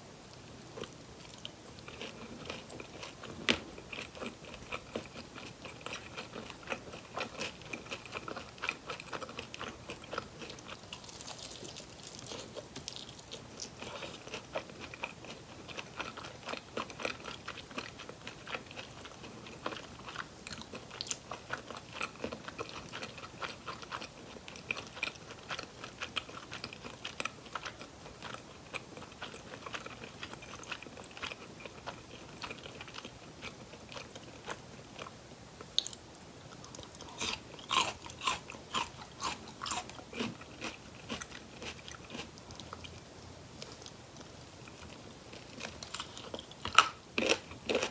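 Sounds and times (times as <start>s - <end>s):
chewing crunchy fried chicken: 0.3s - 47.9s.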